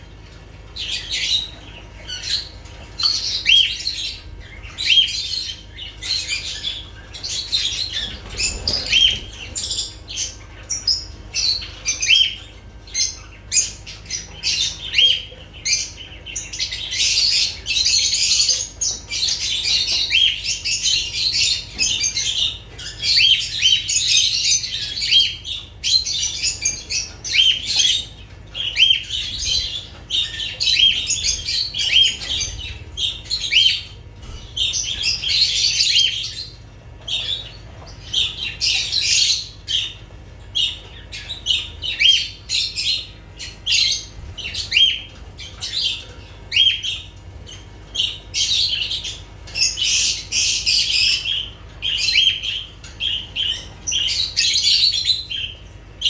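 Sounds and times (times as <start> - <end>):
lovebirds chirping and squawking: 0.0 - 56.0.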